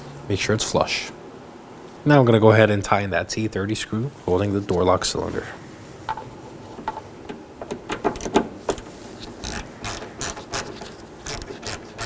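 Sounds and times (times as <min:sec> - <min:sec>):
hand ratchet clicking: 0:08.1 - 0:12.0.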